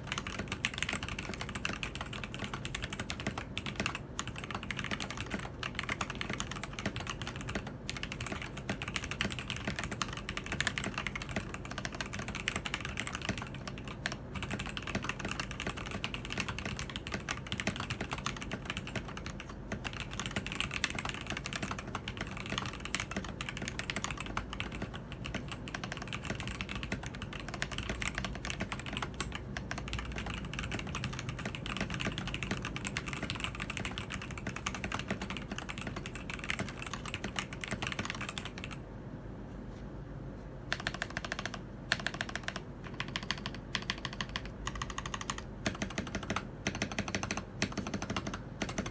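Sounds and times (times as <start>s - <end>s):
mechanical keyboard typing: 0.0s - 38.8s, 40.7s - 48.9s.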